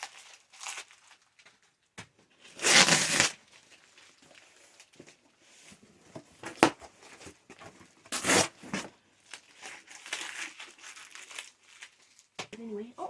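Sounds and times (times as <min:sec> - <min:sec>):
tape and paper tearing: 0:00.0 - 0:01.3, 0:02.4 - 0:04.1, 0:08.1 - 0:12.3.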